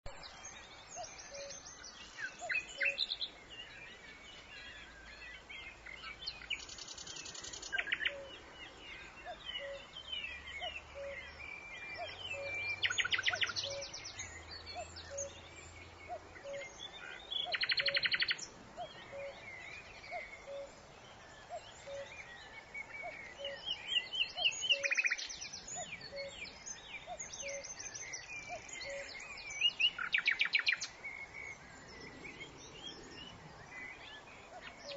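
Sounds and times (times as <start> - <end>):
birds trilling and chirping: 0.1 - 34.9.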